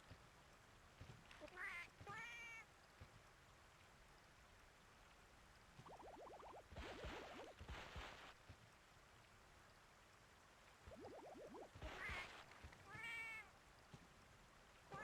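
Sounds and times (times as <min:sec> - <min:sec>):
cat meowing: 0:12.9 - 0:13.5.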